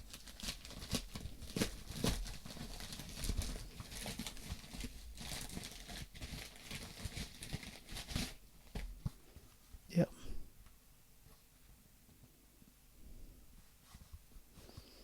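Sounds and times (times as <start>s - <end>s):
plastic packaging crinkling: 0.0s - 8.9s.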